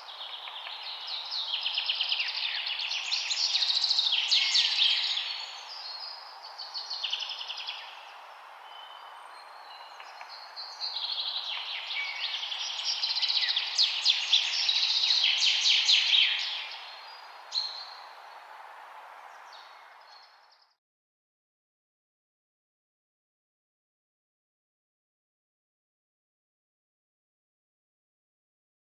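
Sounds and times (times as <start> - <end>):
steady background hiss: 0.0 - 20.4
songbirds chirping and trilling: 0.0 - 20.8.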